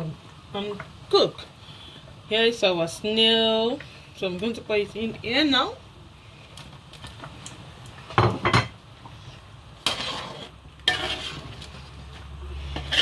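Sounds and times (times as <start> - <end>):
spoon scraping and stirring pot: 9.1 - 13.0.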